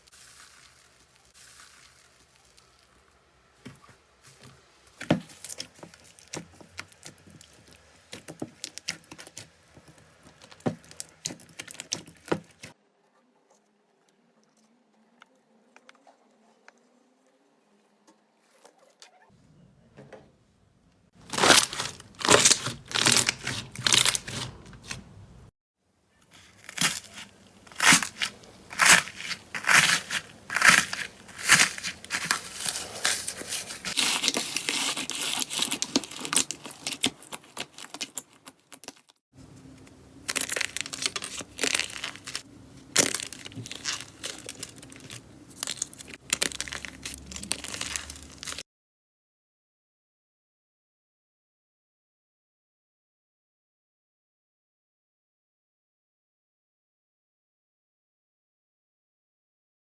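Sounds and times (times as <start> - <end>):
slime crackling by hand: 0.0 - 12.8, 21.2 - 25.0, 26.4 - 39.1, 39.7 - 48.6.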